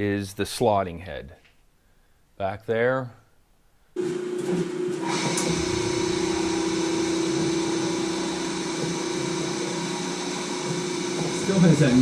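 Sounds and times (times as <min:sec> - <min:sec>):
milling machine motor whine: 0:04.0 - 0:12.0.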